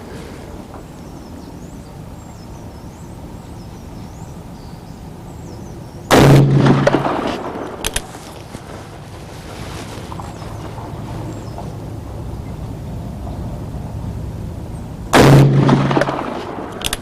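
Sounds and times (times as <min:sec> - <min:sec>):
birds chirping faintly: 0:00.0 - 0:06.2, 0:07.4 - 0:15.1
short sharp cracks: 0:06.1 - 0:10.4, 0:15.2 - 0:17.0.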